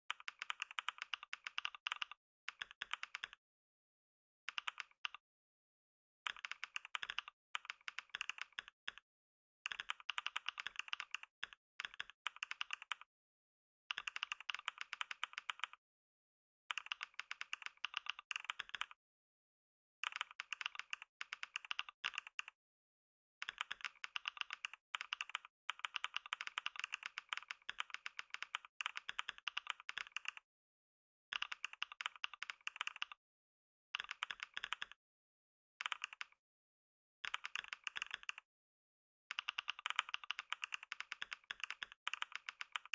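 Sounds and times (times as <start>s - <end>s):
fast typing on keyboard: 0.1s - 3.4s, 4.5s - 5.2s, 6.3s - 9.0s, 9.7s - 13.1s, 13.9s - 15.8s, 16.7s - 19.0s, 20.0s - 22.6s, 23.4s - 30.4s, 31.3s - 33.2s, 34.0s - 35.0s, 35.8s - 36.4s, 37.2s - 38.5s, 39.3s - 42.9s.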